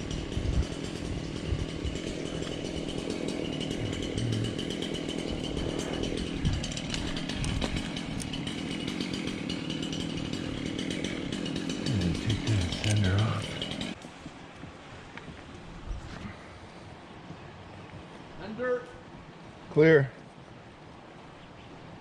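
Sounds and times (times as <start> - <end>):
chainsaw running: 0.0 - 14.0.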